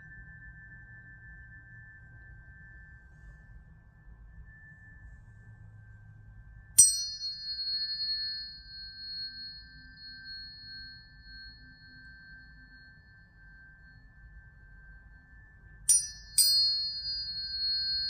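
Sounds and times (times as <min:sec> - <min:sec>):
tuning fork ringing: 0:00.0 - 0:18.0
tuning fork struck click: 0:06.8 - 0:18.0.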